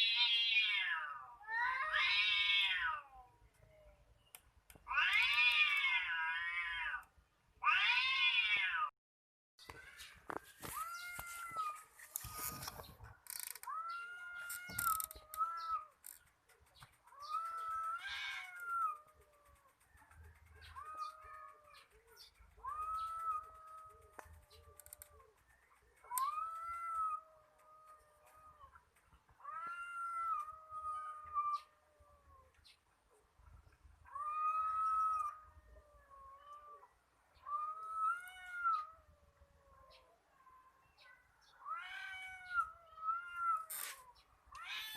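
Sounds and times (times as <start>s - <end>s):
cats yowling: 0.0s - 4.0s, 4.8s - 8.9s, 10.3s - 12.6s, 13.5s - 16.1s, 17.0s - 32.8s, 34.0s - 44.9s
clicking and rattling: 14.4s - 26.7s
cat yowling: 22.6s - 25.3s, 26.0s - 28.8s, 29.4s - 32.6s, 34.1s - 40.8s, 41.6s - 44.9s.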